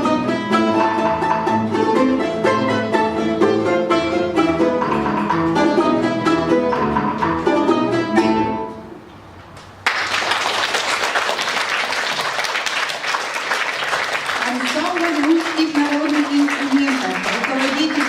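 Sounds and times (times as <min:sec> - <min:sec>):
folk-instrument ensemble playing: 0:00.0 - 0:09.0
audience applause: 0:09.8 - 0:18.0.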